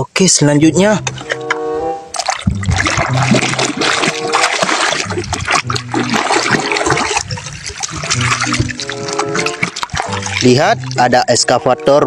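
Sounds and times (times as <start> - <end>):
running water splashing: 2.1 - 11.6.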